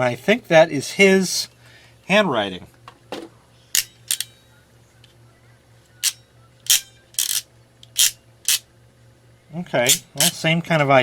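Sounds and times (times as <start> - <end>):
crimp tool metal clicks: 3.8 - 4.3, 6.0 - 8.6.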